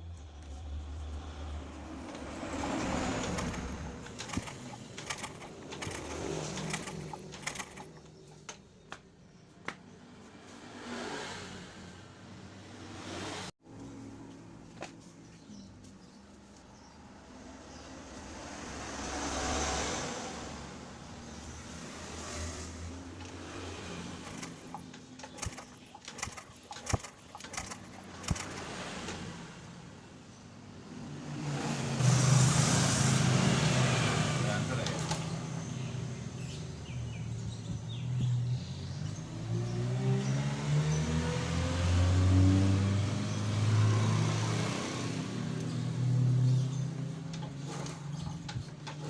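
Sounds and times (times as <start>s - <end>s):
small hard objects clicking: 24.3s - 28.7s.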